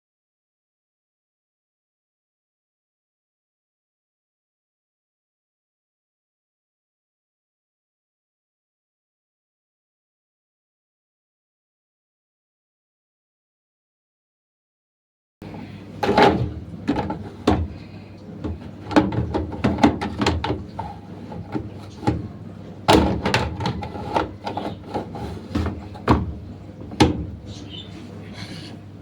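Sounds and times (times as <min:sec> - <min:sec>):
plastic drawer knocks and clicks: 0:16.0 - 0:17.8, 0:18.4 - 0:27.5.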